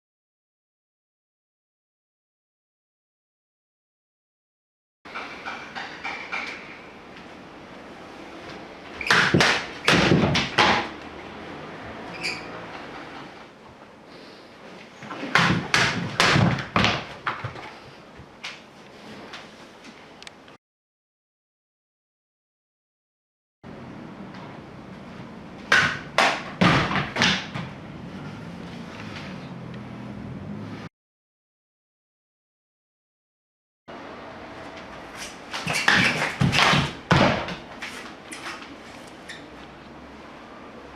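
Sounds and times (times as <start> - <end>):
sword cutting mat targets: 9.0 - 10.9, 15.2 - 17.6, 25.7 - 27.7, 35.2 - 38.6.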